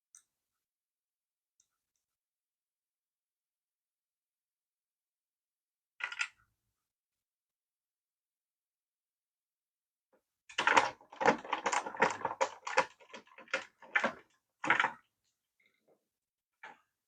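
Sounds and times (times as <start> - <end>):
plastic toy parts clicking: 6.0 - 6.4.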